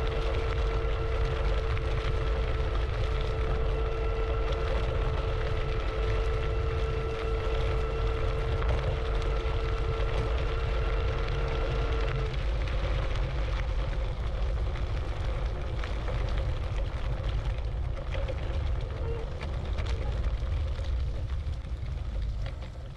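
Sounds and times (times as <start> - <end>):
electric scooter motor whining: 0.0 - 13.3
heavy low rumble: 0.0 - 22.9.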